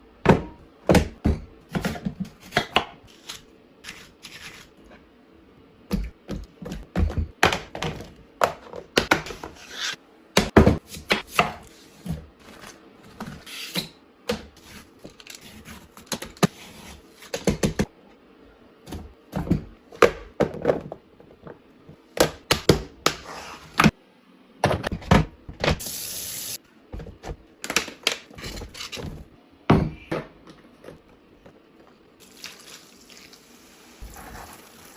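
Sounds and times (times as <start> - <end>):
groceries knocking and thunking: 5.9 - 9.5, 10.4 - 13.4, 18.8 - 23.2, 26.9 - 32.1.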